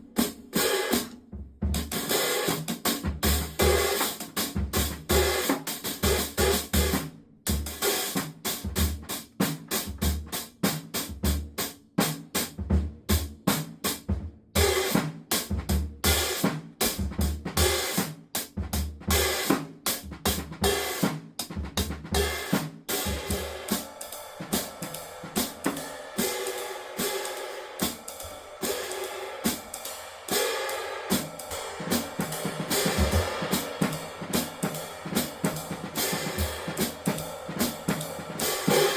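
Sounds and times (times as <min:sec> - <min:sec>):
snare drum: 0:00.0 - 0:38.9
bass drum: 0:02.9 - 0:07.8, 0:16.9 - 0:17.8, 0:18.4 - 0:26.4, 0:31.1 - 0:38.9
hi-hat: 0:22.2 - 0:38.9.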